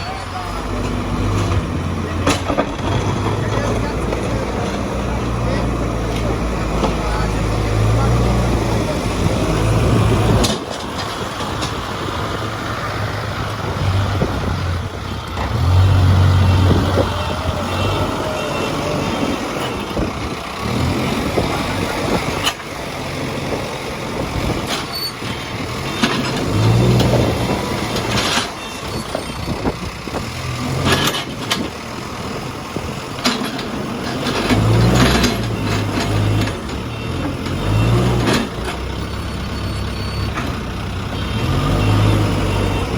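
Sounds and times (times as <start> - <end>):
diesel engine running: 0.0 - 42.9
sharp knocks and clanks: 0.8 - 5.1.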